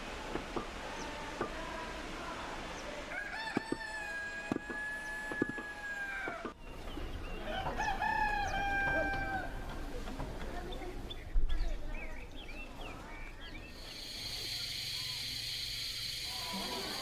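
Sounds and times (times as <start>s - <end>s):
rooster crowing: 3.1s - 6.5s, 7.5s - 9.6s.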